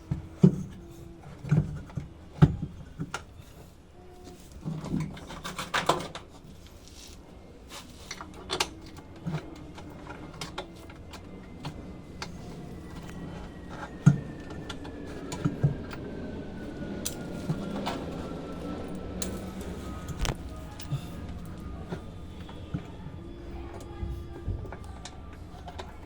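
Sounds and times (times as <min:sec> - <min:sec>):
tools and metal parts clicking: 0:18.9 - 0:22.0.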